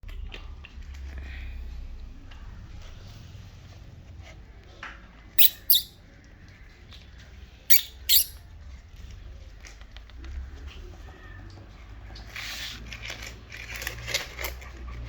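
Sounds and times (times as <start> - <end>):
puppy yipping: 5.4 - 5.9, 7.7 - 8.3.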